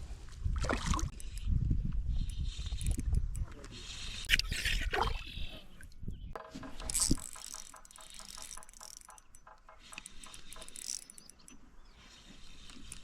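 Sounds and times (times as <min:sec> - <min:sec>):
spinning reel ratchet clicking: 0:06.8 - 0:11.5.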